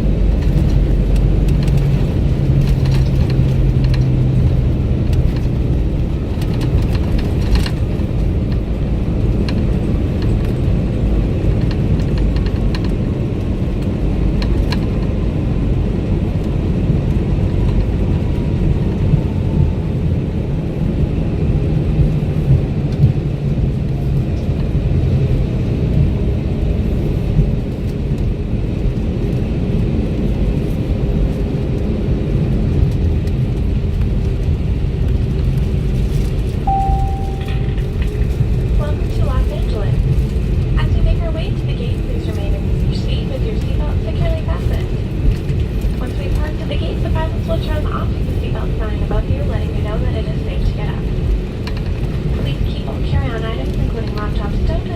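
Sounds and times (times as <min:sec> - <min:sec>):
wheels and airframe rumble: 0:00.0 - 0:54.9
jet engines whining down: 0:34.4 - 0:54.9.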